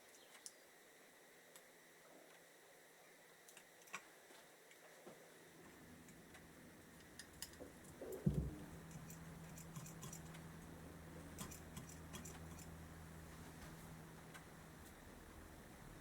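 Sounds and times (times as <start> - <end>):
steady low hum: 4.6 - 16.0
thump: 8.3 - 8.7
small metal parts clicking: 8.9 - 10.4, 11.4 - 12.7.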